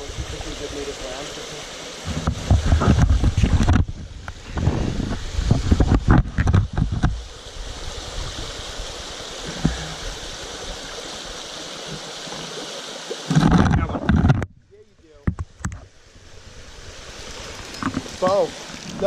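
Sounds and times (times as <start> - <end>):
stream rushing over rocks: 0.0 - 19.0
microphone handling rumble and knocks: 2.0 - 7.2, 13.3 - 16.0.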